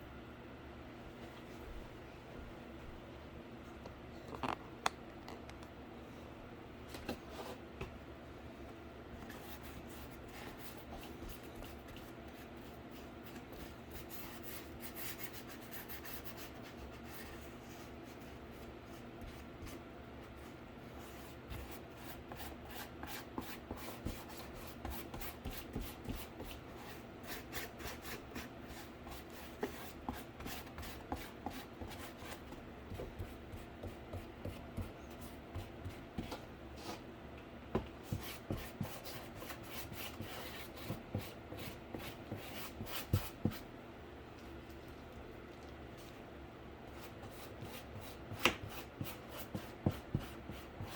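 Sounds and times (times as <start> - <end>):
scratchy paint strokes on cardboard: 38.0 - 43.6.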